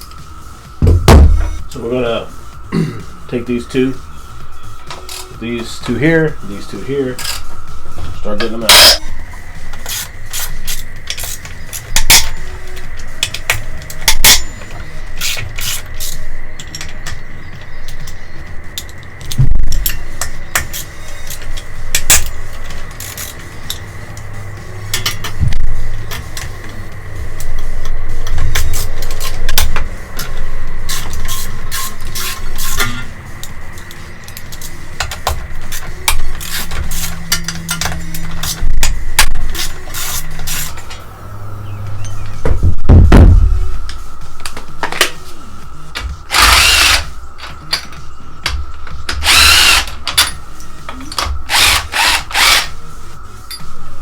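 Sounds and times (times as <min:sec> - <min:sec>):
steady low hum: 0:00.0 - 0:54.0
metal tools clinking on metal: 0:04.8 - 0:09.1, 0:09.7 - 0:19.0, 0:28.3 - 0:41.0, 0:46.0 - 0:52.8, 0:53.4 - 0:53.8
hand tools clinking on metal: 0:08.2 - 0:09.0, 0:28.6 - 0:38.6.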